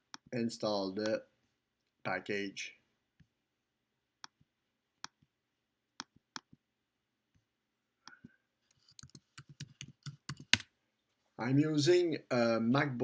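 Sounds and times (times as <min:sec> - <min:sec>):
laptop keyboard keystrokes: 0:09.0 - 0:10.6.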